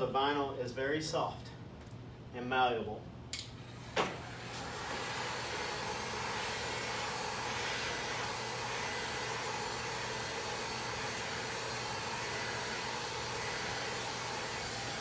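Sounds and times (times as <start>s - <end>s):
heat gun hissing: 4.2s - 15.0s.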